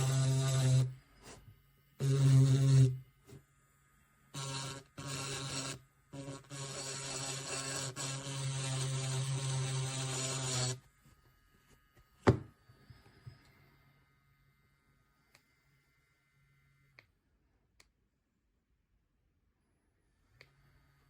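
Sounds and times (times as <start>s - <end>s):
electric nail drill motor humming: 0.0s - 3.4s, 4.2s - 10.9s.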